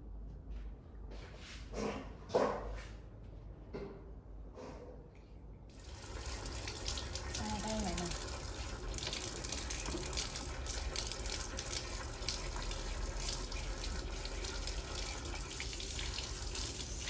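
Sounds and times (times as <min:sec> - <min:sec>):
water running from a tap: 0:05.8 - 0:17.0.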